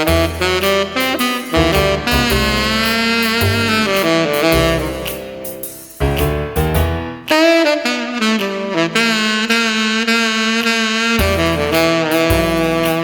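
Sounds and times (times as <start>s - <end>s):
saxophone long notes: 0.0s - 5.7s, 7.2s - 13.0s
bass line: 0.0s - 7.7s, 11.2s - 13.0s.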